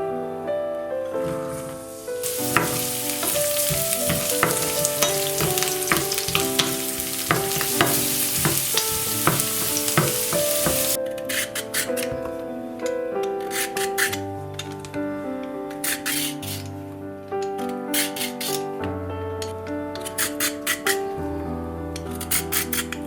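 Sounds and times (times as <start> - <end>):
background music: 0.0 - 23.0
food sizzling in oil: 1.5 - 11.0
stirring clicks: 2.2 - 11.0.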